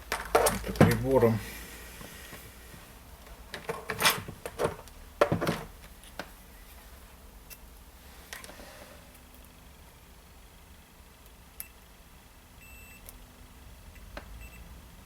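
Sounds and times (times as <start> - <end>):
metal tools clattering on workbench: 0.1 - 1.2, 3.6 - 5.7.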